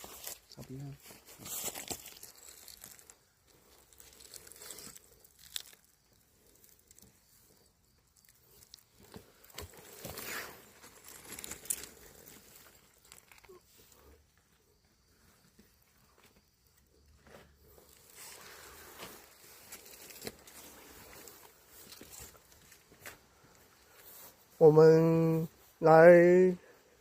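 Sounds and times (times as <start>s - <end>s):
paper rustling and crumpling: 0.0s - 3.1s
sharp crackles: 1.5s - 13.6s.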